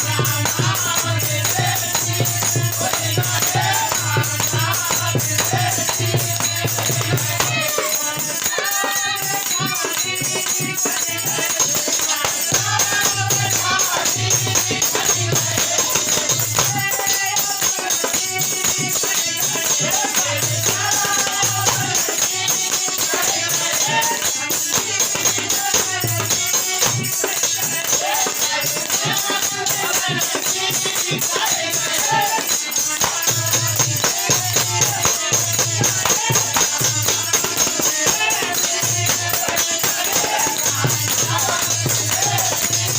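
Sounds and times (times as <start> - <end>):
jingling percussion: 0.0 - 42.9.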